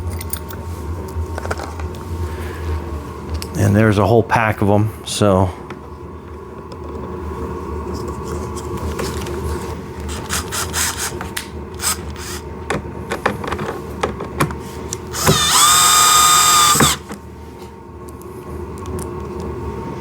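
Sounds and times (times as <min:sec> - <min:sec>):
power drill driving screw: 0:10.1 - 0:11.2, 0:11.8 - 0:12.4, 0:15.1 - 0:17.1.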